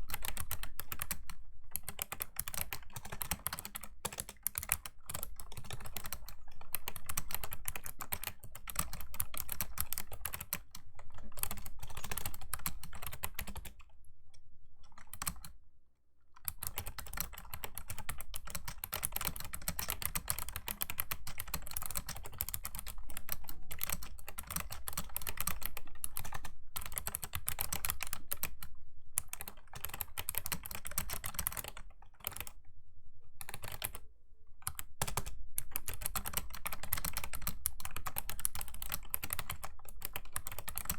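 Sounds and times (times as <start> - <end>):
keyboard key clicks: 34.7 - 40.9.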